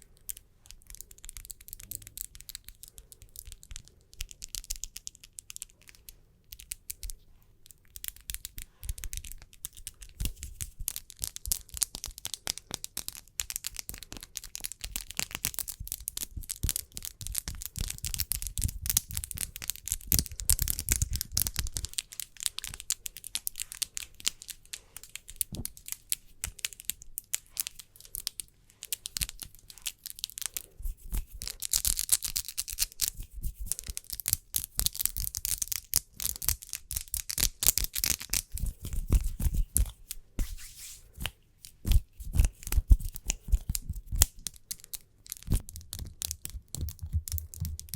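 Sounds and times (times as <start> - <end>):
hands rubbing together: 38.1 - 44.3.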